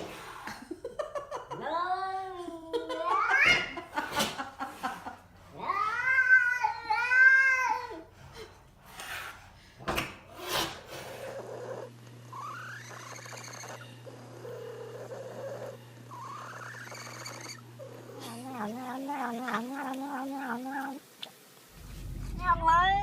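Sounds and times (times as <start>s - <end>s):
steady low hum: 21.6s - 23.0s.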